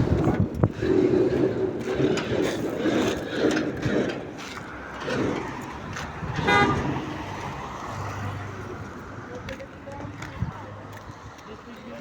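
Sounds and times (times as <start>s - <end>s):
road vehicles passing: 0.0s - 12.0s
short car horn toot: 6.4s - 6.8s.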